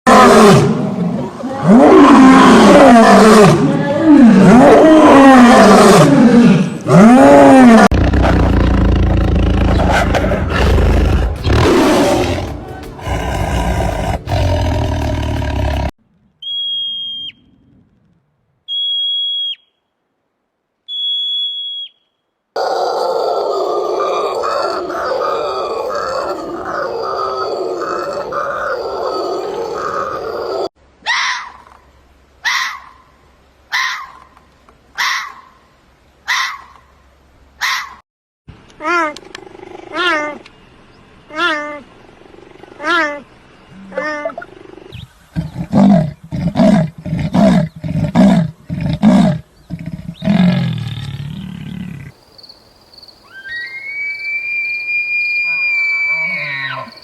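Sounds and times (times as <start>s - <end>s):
animal grunting: 1.7s - 15.9s, 22.6s - 30.7s
high steady whistle-like tone: 16.4s - 17.5s, 18.7s - 19.9s, 20.9s - 22.2s, 53.3s - 56.4s.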